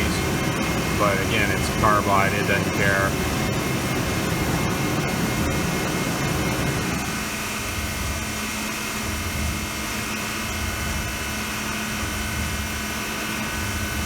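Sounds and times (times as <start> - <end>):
machine hum: 0.0 - 9.2
cnc mill cutting with whining tones: 0.0 - 14.0.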